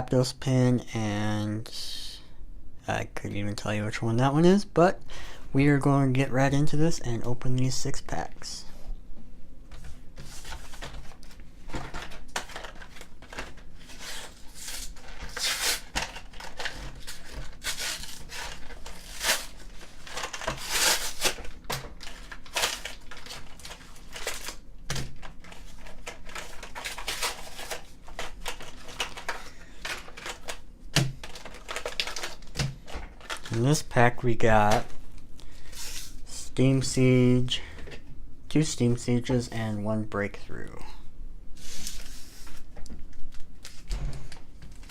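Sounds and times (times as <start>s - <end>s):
plastic packaging crinkling and tearing: 10.4s - 34.0s.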